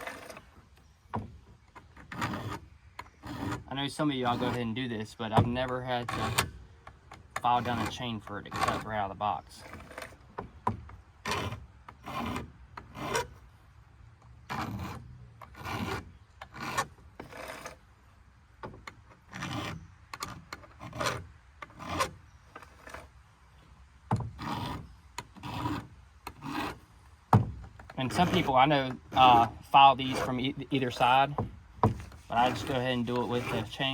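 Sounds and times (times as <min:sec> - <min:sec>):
file rasping on chainsaw chain: 0:00.0 - 0:00.5, 0:02.1 - 0:06.6, 0:07.4 - 0:10.2, 0:11.2 - 0:13.4, 0:14.4 - 0:17.8, 0:19.3 - 0:23.1, 0:24.4 - 0:26.9, 0:27.9 - 0:31.4, 0:32.2 - 0:33.9.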